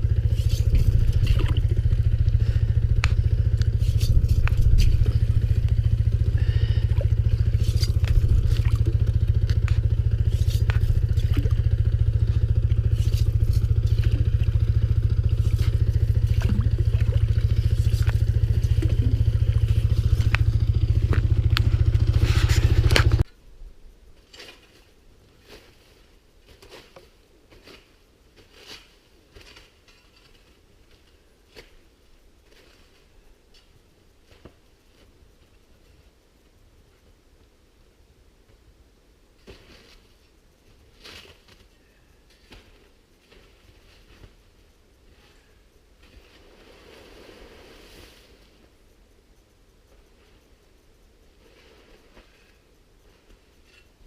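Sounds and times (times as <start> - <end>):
small gasoline engine running: 0.0 - 23.2
light scraping and crunching: 0.0 - 23.3, 24.1 - 36.1, 39.4 - 48.8, 51.4 - 54.0.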